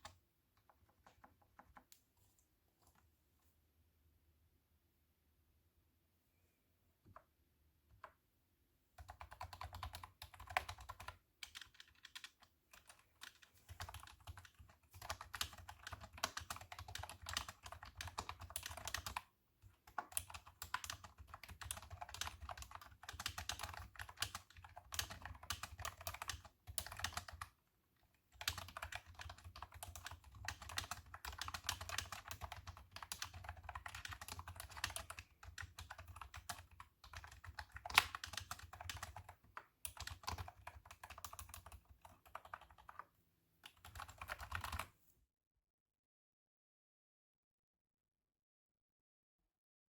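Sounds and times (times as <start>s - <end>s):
keyboard typing clicks: 28.4s - 43.0s, 43.7s - 44.9s.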